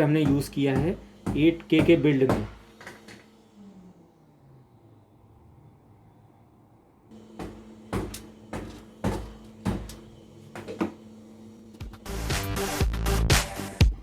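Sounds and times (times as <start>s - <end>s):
electronic music with knocking beat: 11.8s - 14.0s.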